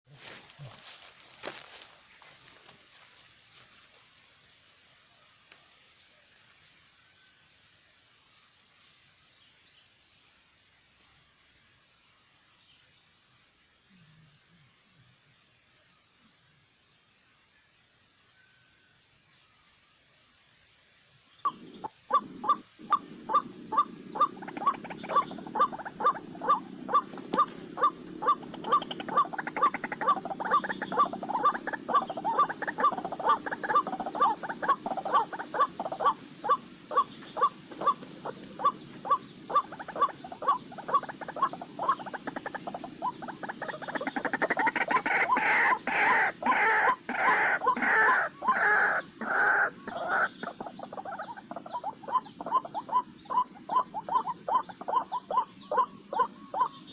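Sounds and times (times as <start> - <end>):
waterhen croaking calls: 21.4 - 56.9.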